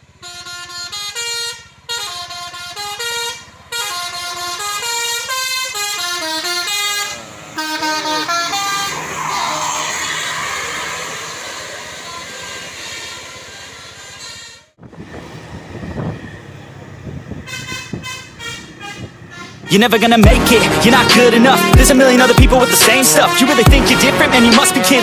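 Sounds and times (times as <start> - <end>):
musical bus air horn tune: 0.1 - 14.8, 17.4 - 25.0.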